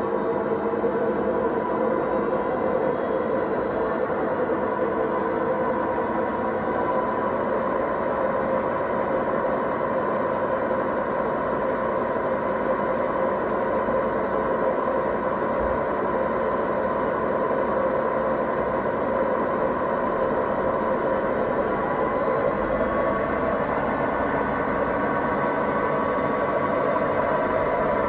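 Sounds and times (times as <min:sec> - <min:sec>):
washing machine spinning: 0:11.0 - 0:28.0.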